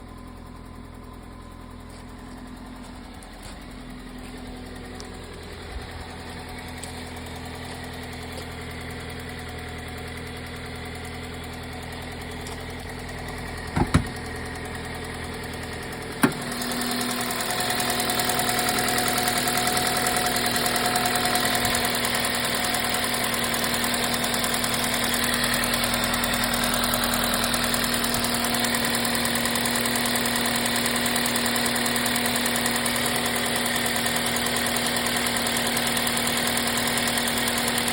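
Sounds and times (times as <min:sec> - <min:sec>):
car engine idling with ticking: 0:00.0 - 0:37.9
sharp knocks: 0:13.8 - 0:14.2.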